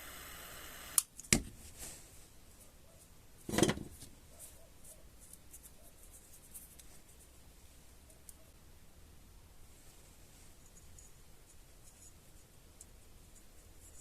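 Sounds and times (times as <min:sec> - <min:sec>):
faint ticks and rubbing: 0:04.3 - 0:07.4, 0:09.9 - 0:14.0.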